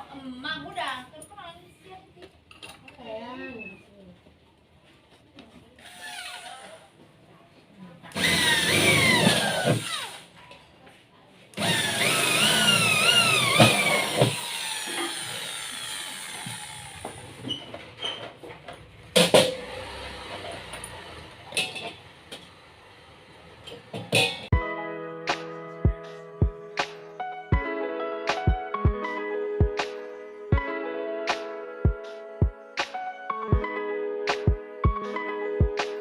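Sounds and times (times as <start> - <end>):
electric drill motor whine: 5.8 - 6.8, 8.2 - 10.2, 11.6 - 17.4.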